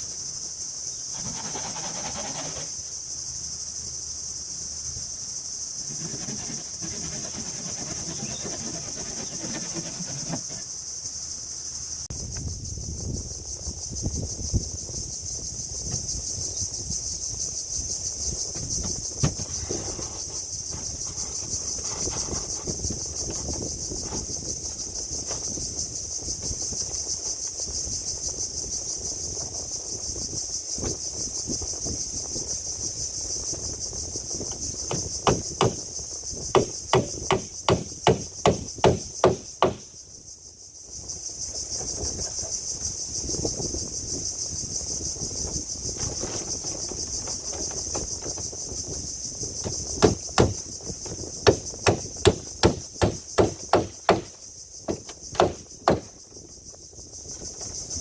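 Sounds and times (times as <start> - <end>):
high insect buzz: 0.0 - 58.0
hammer blows on wood: 34.9 - 35.9, 36.5 - 40.0, 49.9 - 50.8, 51.4 - 56.2.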